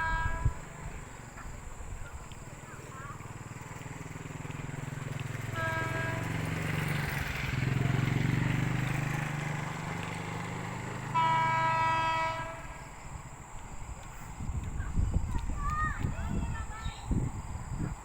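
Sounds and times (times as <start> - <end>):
train horn: 0.0 - 0.8, 5.5 - 7.1, 11.1 - 12.9
electric train rumbling past: 0.0 - 18.0.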